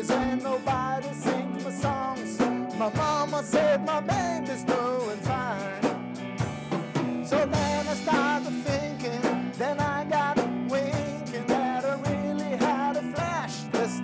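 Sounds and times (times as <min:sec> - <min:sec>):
bass and chords: 0:00.0 - 0:14.0
drums steady beat: 0:00.0 - 0:14.0
wavering lead guitar melody: 0:00.0 - 0:14.0.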